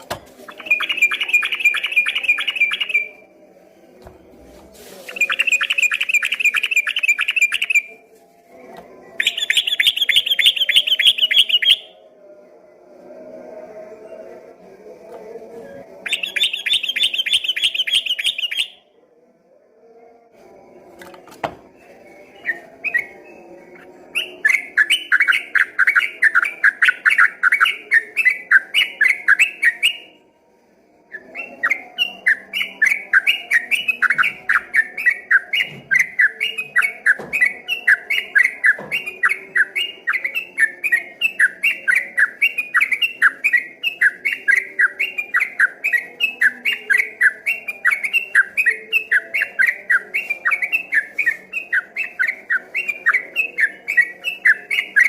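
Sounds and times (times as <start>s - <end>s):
bulbul singing rapid notes: 0.5s - 3.2s.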